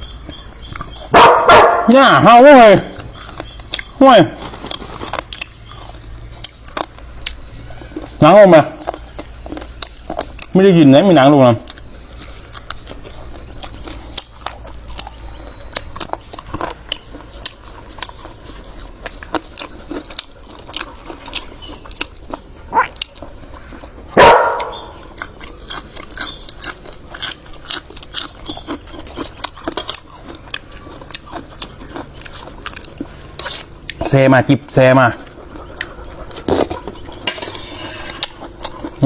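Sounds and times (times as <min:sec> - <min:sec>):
dog yelping: 0:01.0 - 0:02.0, 0:22.6 - 0:23.0, 0:24.2 - 0:25.0
dog barking: 0:01.1 - 0:02.0, 0:22.7 - 0:23.0, 0:24.2 - 0:25.0.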